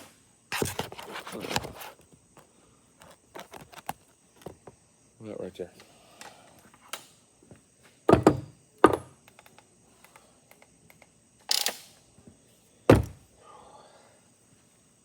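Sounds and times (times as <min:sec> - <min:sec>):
objects knocking and clunking: 0:00.6 - 0:02.0, 0:03.0 - 0:04.8, 0:12.9 - 0:13.2.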